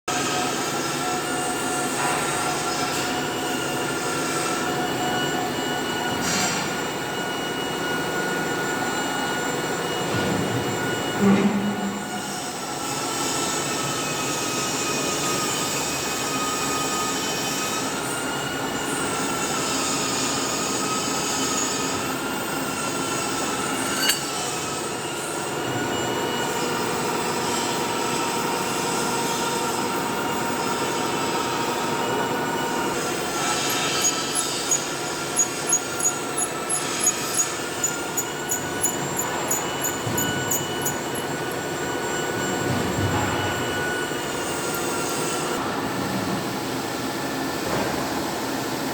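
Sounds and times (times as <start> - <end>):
drilling machine whining: 28.5 - 45.6.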